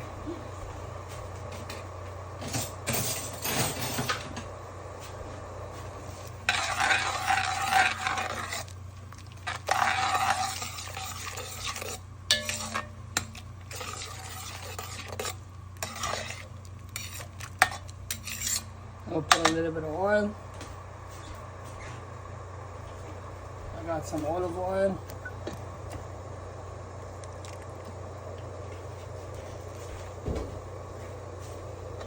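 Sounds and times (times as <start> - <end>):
utensil scraping a pot: 6.1 - 19.5
utensil clinking against pot: 10.4 - 16.4.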